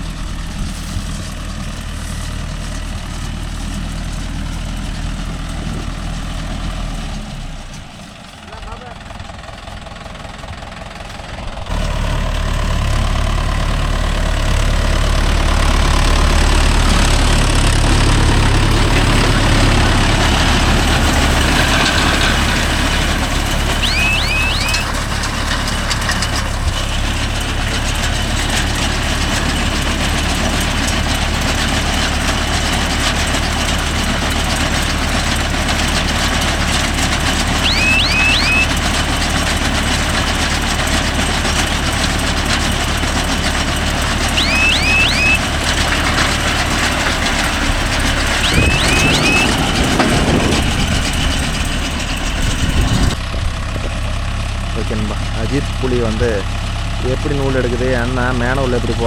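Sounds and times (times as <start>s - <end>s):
tractor diesel engine running: 0.0s - 59.0s
short high chirps: 23.7s - 25.0s, 37.6s - 38.8s, 44.3s - 45.5s, 48.3s - 49.8s.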